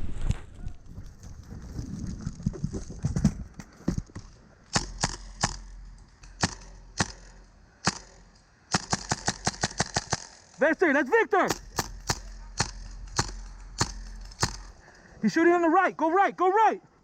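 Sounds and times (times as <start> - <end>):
footsteps: 0.0 - 8.5, 10.6 - 15.2
airsoft gun shots: 4.7 - 10.6, 11.4 - 14.8.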